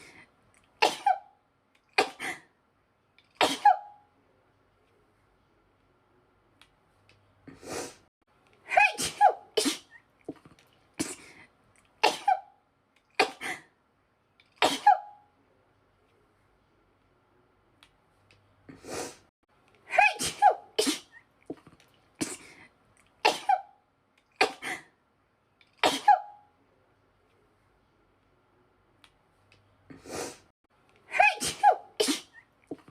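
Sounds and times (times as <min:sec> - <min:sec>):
woman sneezing: 0:00.8 - 0:01.3, 0:03.4 - 0:04.0, 0:08.7 - 0:10.0, 0:12.0 - 0:12.4, 0:14.6 - 0:15.1, 0:19.9 - 0:21.2, 0:23.2 - 0:23.7, 0:25.8 - 0:26.4, 0:31.1 - 0:32.4.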